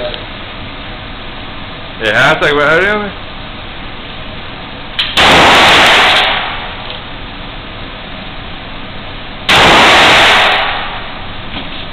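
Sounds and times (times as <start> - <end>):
loud gunshots: 5.1 - 6.8, 9.5 - 11.0.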